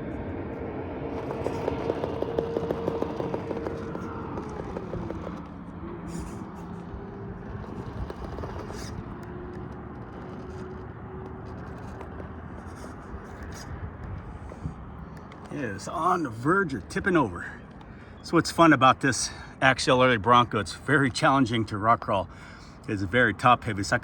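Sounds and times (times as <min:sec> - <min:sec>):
faint ticks and scrapes: 0:01.1 - 0:18.2.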